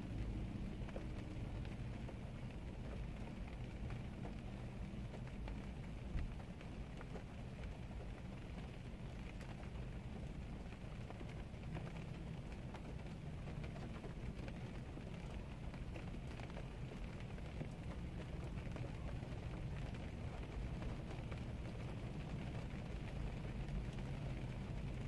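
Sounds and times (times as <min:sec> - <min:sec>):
rain falling: 0:00.0 - 0:25.0
raindrops ticking: 0:00.0 - 0:25.0.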